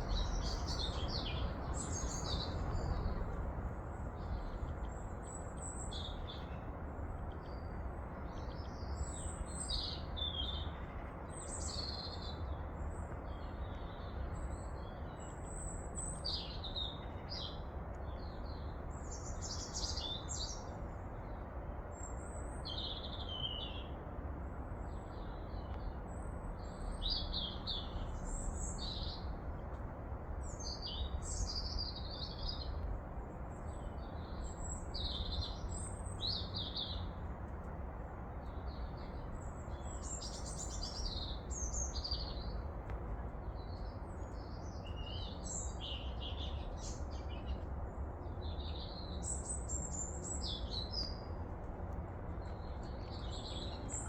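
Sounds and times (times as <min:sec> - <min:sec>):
steady low background noise: 0:00.0 - 0:54.0.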